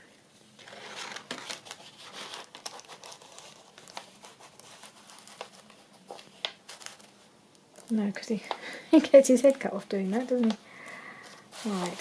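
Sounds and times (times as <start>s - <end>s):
paper and card rustling: 0.5s - 12.0s.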